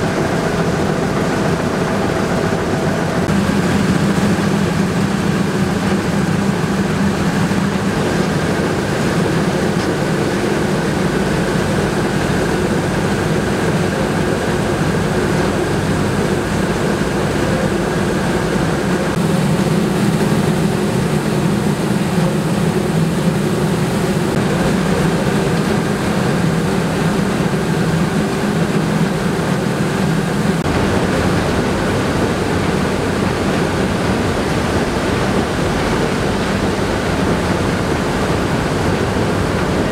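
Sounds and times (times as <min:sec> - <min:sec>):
mill machinery droning: 0:00.0 - 0:39.9.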